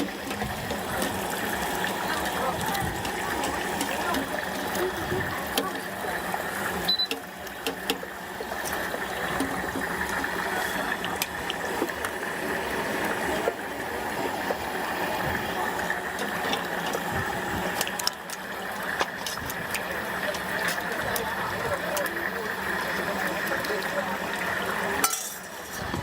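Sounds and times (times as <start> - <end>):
oil sizzling in deep fryer: 0.0 - 26.0.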